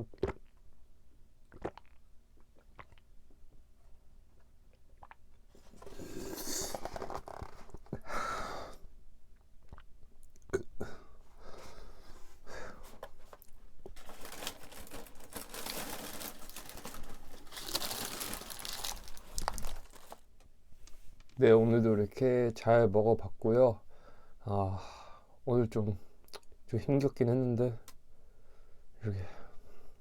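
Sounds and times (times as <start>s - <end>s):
chewing crunchy pastry: 0.0s - 0.7s, 1.5s - 3.5s.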